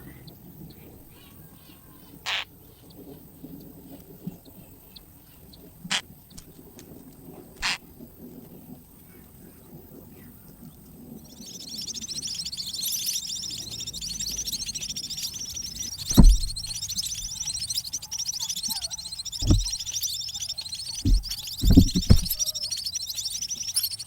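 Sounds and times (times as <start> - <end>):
nestlings chattering: 0.0 - 24.0
sharp knocks: 16.1 - 16.7, 19.4 - 19.8, 21.0 - 22.4.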